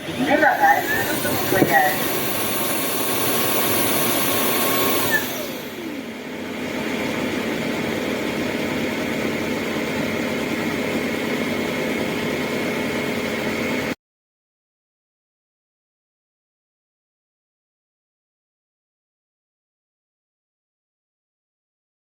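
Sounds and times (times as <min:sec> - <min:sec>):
vacuum motor and brush roller: 0:00.0 - 0:09.2.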